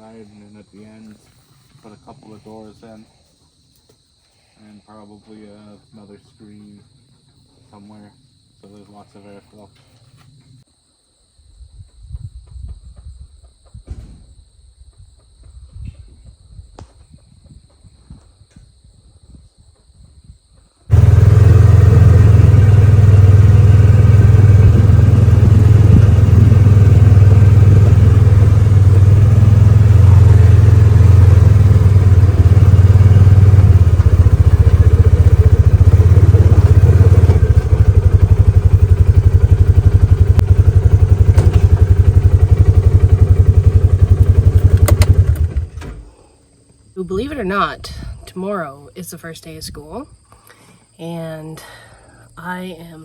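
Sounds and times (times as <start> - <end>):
engine running: 20.9 - 46.1.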